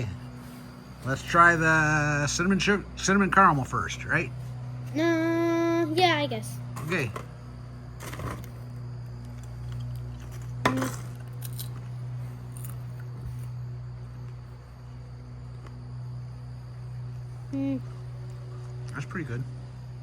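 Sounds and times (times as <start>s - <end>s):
steady low hum: 0.0s - 20.0s
person humming: 17.5s - 17.9s.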